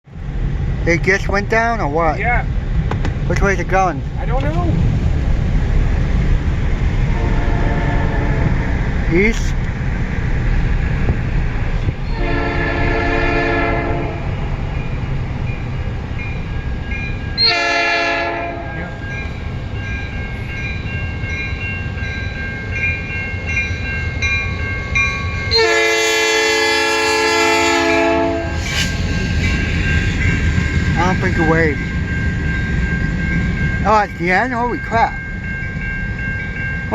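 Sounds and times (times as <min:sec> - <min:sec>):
passing train rumble: 0:00.0 - 0:36.9
locomotive air horn chord: 0:07.1 - 0:08.6, 0:12.1 - 0:14.3, 0:17.4 - 0:18.9, 0:25.5 - 0:28.6.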